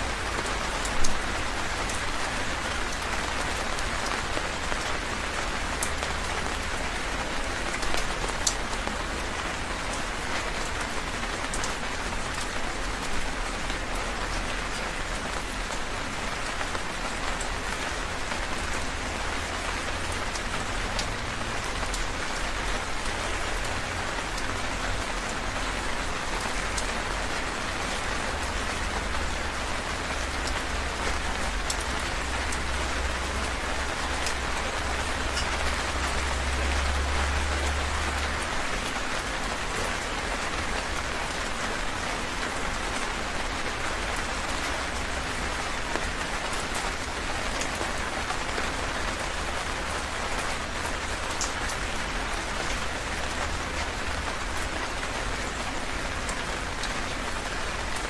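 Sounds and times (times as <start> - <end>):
rain drop splashes: 16.7 - 58.0.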